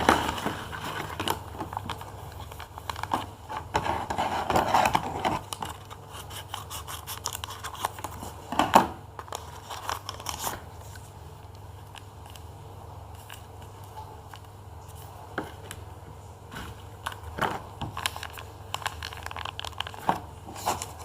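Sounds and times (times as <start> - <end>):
paper rustling: 9.2 - 11.2, 16.5 - 21.0.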